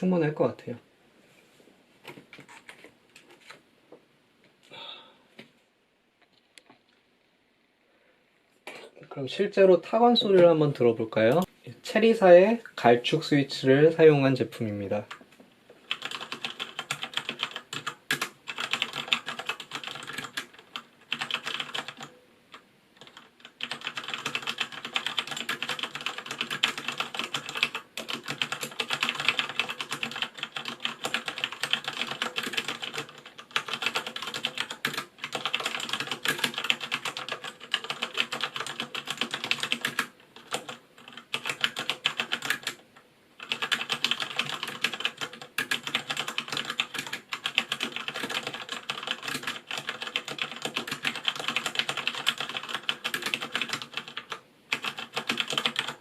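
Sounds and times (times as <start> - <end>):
typing on mechanical keyboard: 15.8 - 22.2, 23.0 - 42.8, 43.4 - 56.0.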